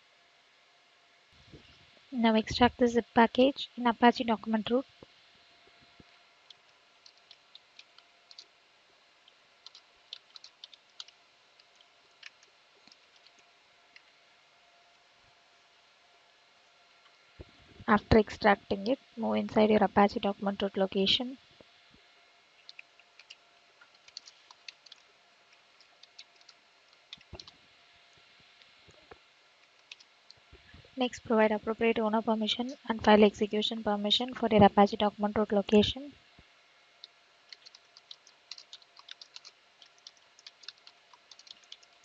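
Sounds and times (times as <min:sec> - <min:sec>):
quiet room hum: 0:00.0 - 0:42.0
computer keyboard clicking: 0:07.0 - 0:08.5, 0:09.6 - 0:13.4, 0:22.7 - 0:25.1, 0:25.8 - 0:27.6, 0:29.8 - 0:30.1, 0:37.5 - 0:42.0.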